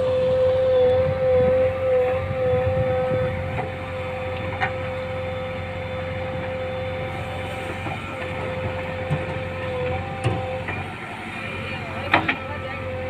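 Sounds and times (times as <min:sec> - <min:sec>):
high whine: 0:00.0 - 0:09.0
heavy diesel engine running: 0:00.0 - 0:13.0.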